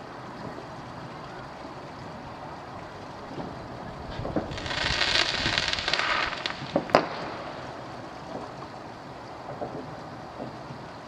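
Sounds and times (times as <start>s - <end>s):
wind-like rush: 2.1s - 7.8s
distant firework pops: 3.4s - 7.7s, 9.4s - 10.9s
firework crackling hiss: 3.4s - 10.9s
firework bangs: 4.1s - 8.6s.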